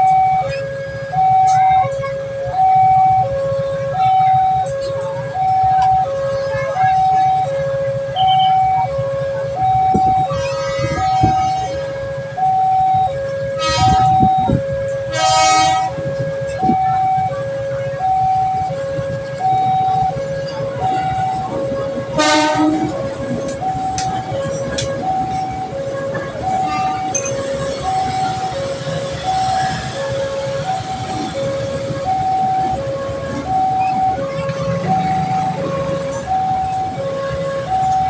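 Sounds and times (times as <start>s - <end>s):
two-tone warning siren: 0.0s - 38.0s
short horn blasts: 13.6s - 14.2s, 15.1s - 15.9s, 22.2s - 23.0s.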